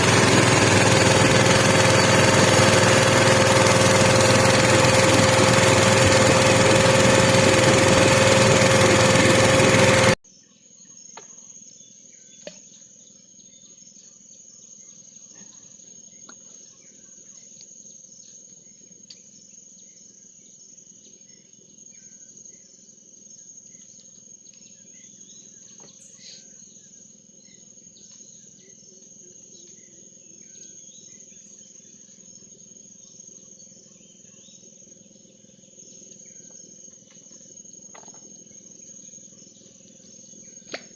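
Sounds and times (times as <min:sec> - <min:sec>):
small engine running: 0:00.0 - 0:10.2
insects droning: 0:13.0 - 0:40.9.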